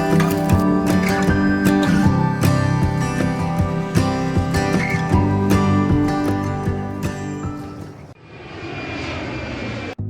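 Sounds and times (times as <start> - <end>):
plucked acoustic guitar music: 0.0 - 7.8.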